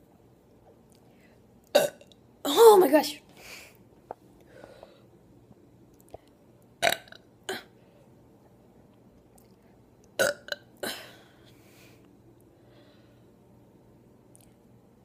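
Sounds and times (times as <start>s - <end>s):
woman burping: 1.7s - 2.1s, 6.8s - 7.7s, 10.2s - 11.2s.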